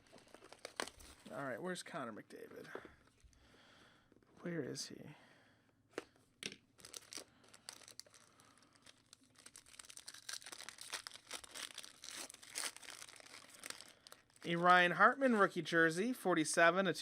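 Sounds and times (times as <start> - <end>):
card packaging rustling and crinkling: 0.0 - 1.4, 6.8 - 15.6.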